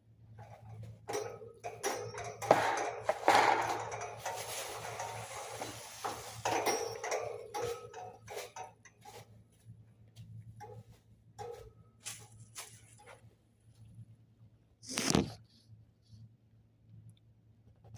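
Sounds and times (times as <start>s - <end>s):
hard objects tapping and clicking: 1.1s - 5.8s.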